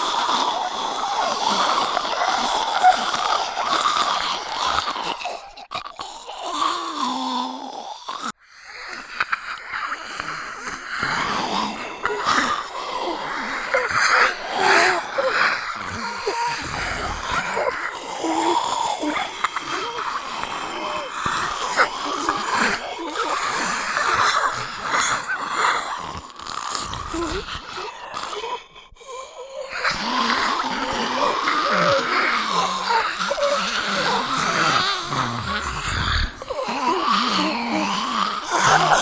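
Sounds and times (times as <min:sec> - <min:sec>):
raspy wheezing breaths: 0:00.0 - 0:39.0
zombie voice groaning and growling: 0:11.0 - 0:28.7, 0:29.6 - 0:39.0.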